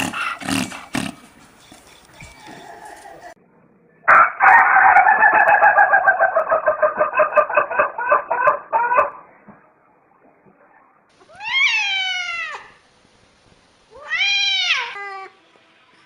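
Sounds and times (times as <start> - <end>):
rooster crowing: 4.1 - 9.1.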